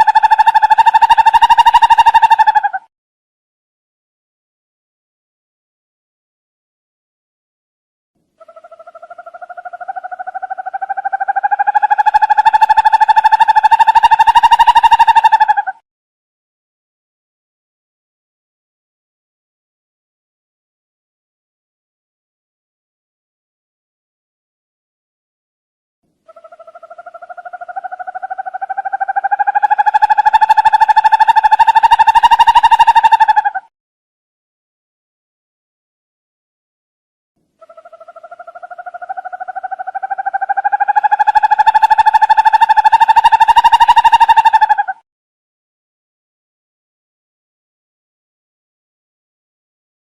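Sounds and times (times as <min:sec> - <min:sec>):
owl trilled call: 0:00.0 - 0:02.9, 0:08.4 - 0:15.8, 0:26.3 - 0:33.7, 0:37.6 - 0:45.0.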